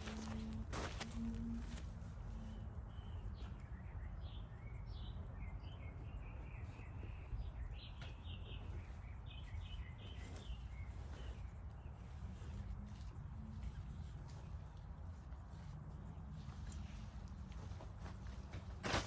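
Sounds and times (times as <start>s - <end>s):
small birds chirping: 0.0s - 14.5s
low rumble of background noise: 0.0s - 19.0s.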